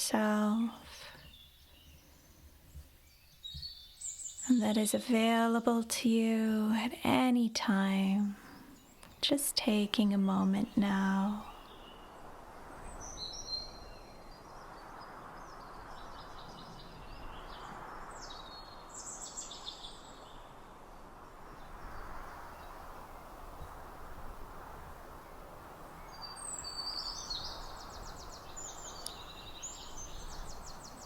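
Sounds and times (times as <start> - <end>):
songbirds chirping and trilling: 0.0 - 6.4, 7.8 - 31.0
soft steady rushing background: 0.0 - 31.0.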